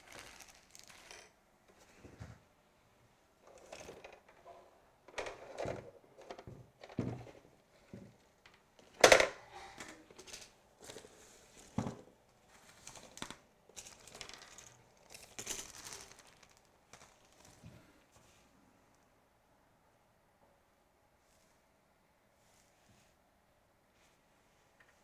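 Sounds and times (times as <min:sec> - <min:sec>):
packaging rustling: 0:00.0 - 0:01.4, 0:12.5 - 0:17.7.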